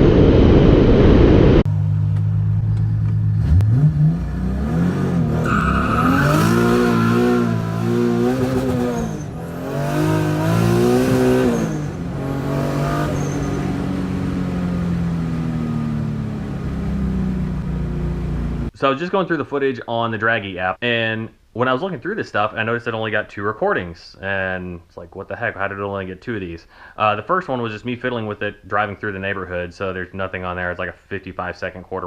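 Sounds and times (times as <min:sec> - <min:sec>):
car engine accelerating hard: 0:01.8 - 0:18.7.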